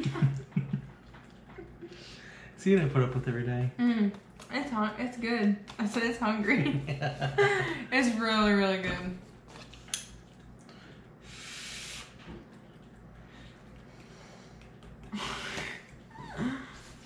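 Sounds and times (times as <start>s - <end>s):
person eating: 11.8s - 17.0s.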